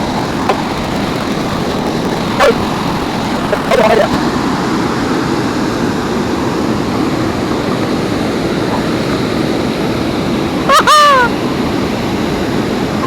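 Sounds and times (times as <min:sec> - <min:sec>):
steady loud rushing noise: 0:00.0 - 0:10.7.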